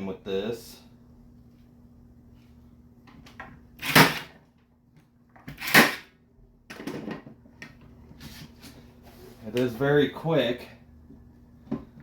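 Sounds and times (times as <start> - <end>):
cable stapler firing: 5.5 - 6.1.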